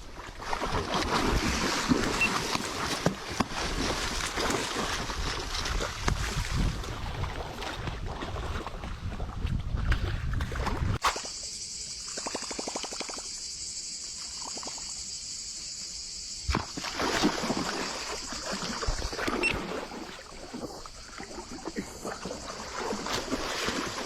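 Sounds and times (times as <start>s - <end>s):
water splashing and sloshing: 0.0s - 13.3s, 16.4s - 24.0s
steady high hiss: 11.3s - 16.5s.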